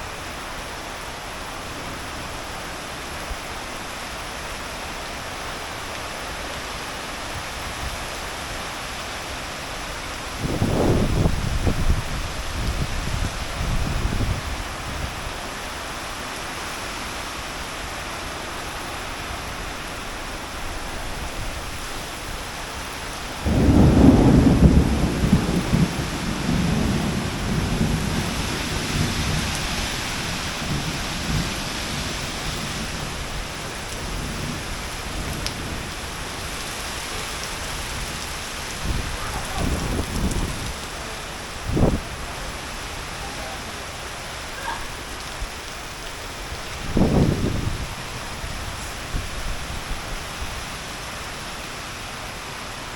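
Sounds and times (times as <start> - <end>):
heavy rain falling: 0.0 - 52.9
thunder rumble: 10.3 - 15.4, 20.1 - 50.7.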